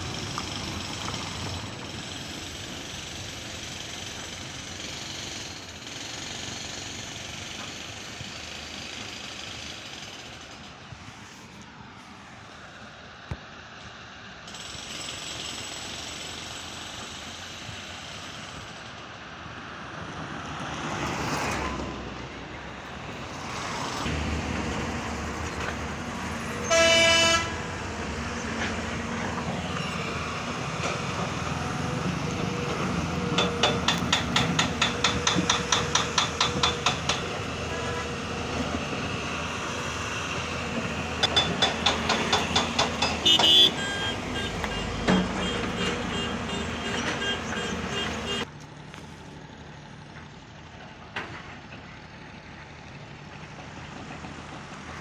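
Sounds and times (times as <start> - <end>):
heavy engine running: 0.0 - 55.0
road traffic: 0.0 - 55.0
vehicle horn blast: 26.6 - 27.7, 43.2 - 48.5.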